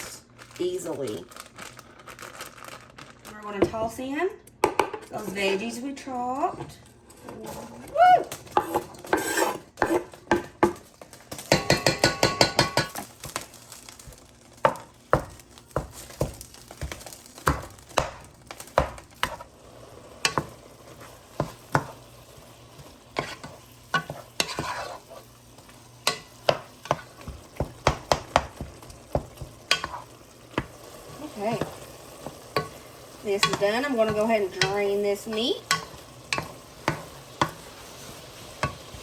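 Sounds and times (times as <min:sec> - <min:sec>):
utensil scraping a pan: 0:08.6 - 0:10.1, 0:22.8 - 0:25.4, 0:26.0 - 0:28.0, 0:29.4 - 0:39.0
meat sizzling in a pan: 0:11.3 - 0:39.0.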